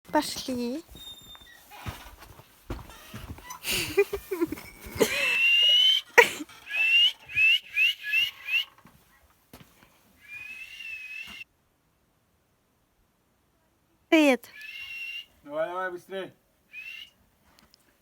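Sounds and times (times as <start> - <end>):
person whistling: 5.0 - 8.7.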